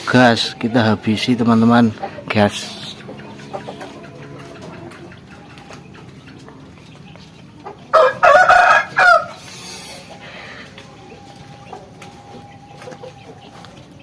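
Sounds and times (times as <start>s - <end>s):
rooster crowing: 7.9s - 13.1s.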